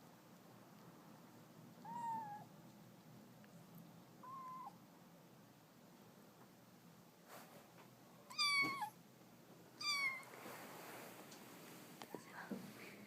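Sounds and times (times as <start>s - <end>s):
cat meowing: 1.8s - 2.5s, 4.2s - 4.8s, 8.3s - 9.0s, 9.8s - 10.3s.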